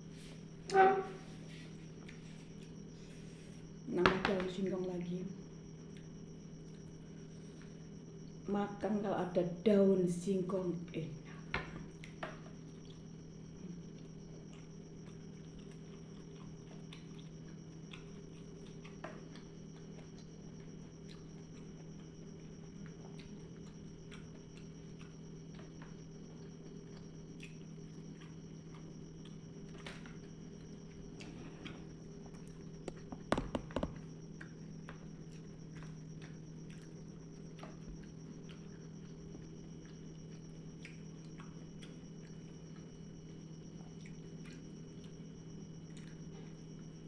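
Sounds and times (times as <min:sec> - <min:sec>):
faint high whine: 0:00.0 - 0:47.0
low electrical hum: 0:00.0 - 0:47.0
mouth clicks and chewing: 0:02.0 - 0:02.8, 0:13.9 - 0:22.2, 0:22.8 - 0:33.2, 0:34.4 - 0:43.0, 0:43.8 - 0:45.2
sharp knocks: 0:32.9 - 0:34.0.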